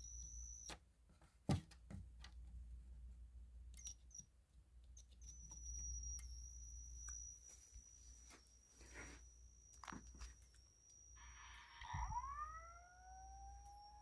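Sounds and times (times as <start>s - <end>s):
high-pitched electronic whine: 5.2s - 14.0s.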